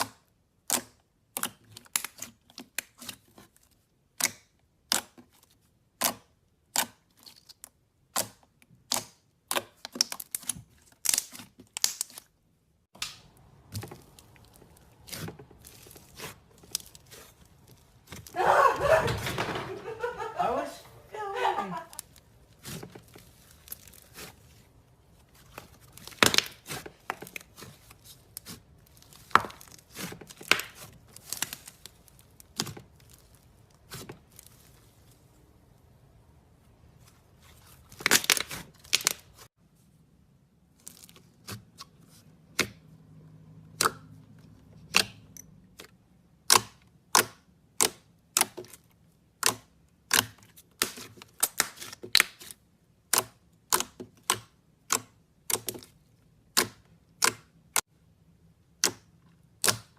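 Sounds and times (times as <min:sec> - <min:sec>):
slime popping and crackling: 0:08.1 - 0:12.3.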